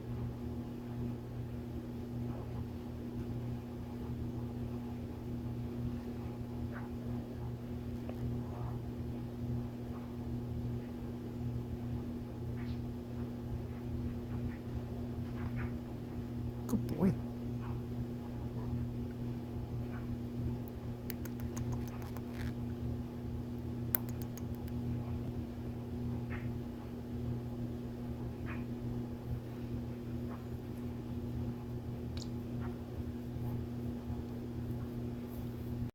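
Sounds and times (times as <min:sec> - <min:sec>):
low mechanical hum: 0:00.0 - 0:35.9
faint clicks: 0:21.1 - 0:22.5, 0:23.9 - 0:24.8
parrot chirping softly: 0:21.1 - 0:22.6.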